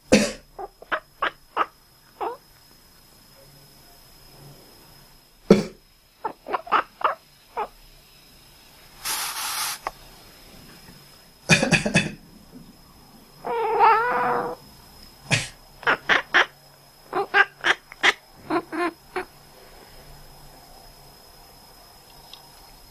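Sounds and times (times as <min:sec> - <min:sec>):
person coughing: 0:00.1 - 0:00.4, 0:11.5 - 0:12.2, 0:15.3 - 0:15.6
cat making quacking calls: 0:06.2 - 0:07.7, 0:15.8 - 0:16.5, 0:17.1 - 0:19.3.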